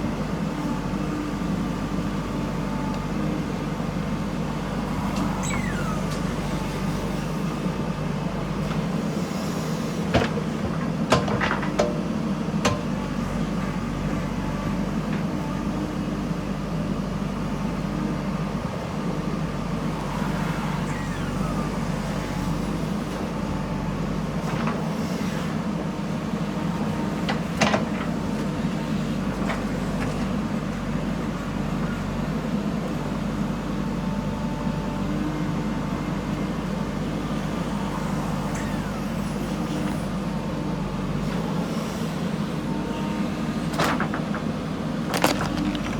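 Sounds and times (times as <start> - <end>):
diesel engine running: 12.1 - 24.9, 26.2 - 45.9
knocks of digging machine: 43.7 - 45.9.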